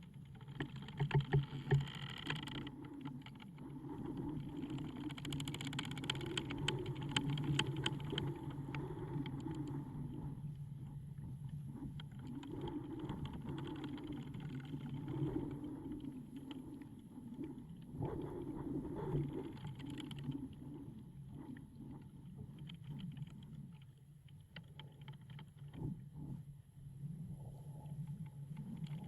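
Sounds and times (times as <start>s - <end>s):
wood clicks and ticks: 0.0s - 3.7s, 4.3s - 9.7s, 22.6s - 25.8s
wooden timbers creaking: 0.3s - 2.8s.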